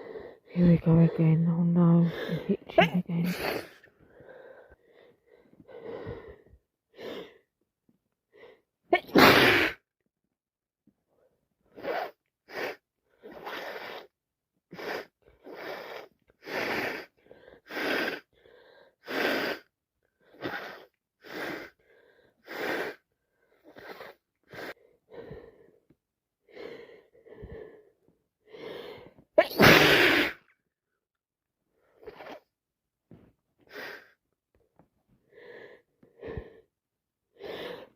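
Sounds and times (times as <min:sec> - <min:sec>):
gasping in-breaths: 0:03.2 - 0:07.5
woman sneezing loudly: 0:08.9 - 0:09.8, 0:29.4 - 0:30.5.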